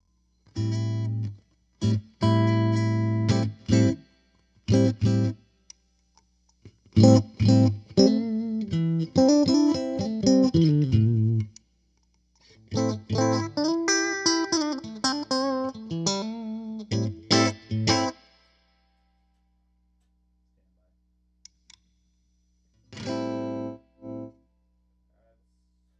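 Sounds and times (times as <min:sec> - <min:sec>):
electric guitar plucked notes: 0:00.5 - 0:04.0, 0:04.7 - 0:05.4, 0:06.8 - 0:11.6, 0:12.5 - 0:18.2, 0:22.9 - 0:24.3.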